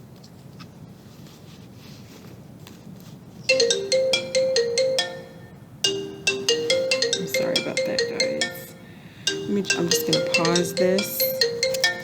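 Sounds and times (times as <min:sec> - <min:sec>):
phone ringtone melody: 0:03.5 - 0:12.0.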